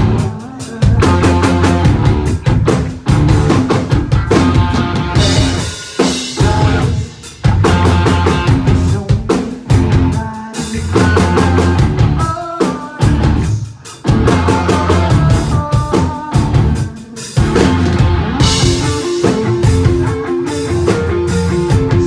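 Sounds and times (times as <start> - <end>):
drum kit kick and snare: 0.0 - 22.0
rock band playing live: 0.0 - 22.0.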